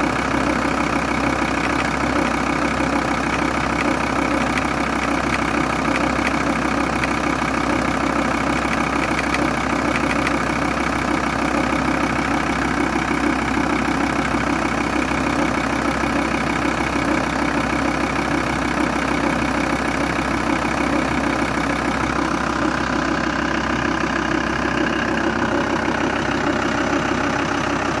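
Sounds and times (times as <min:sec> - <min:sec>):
diesel engine idling: 0:00.0 - 0:28.0
rapid ticking: 0:01.0 - 0:10.7.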